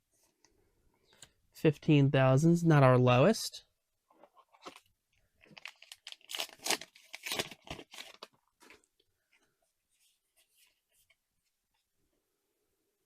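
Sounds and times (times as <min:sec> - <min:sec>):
foil wrapper tearing and crinkling: 0:05.5 - 0:08.3.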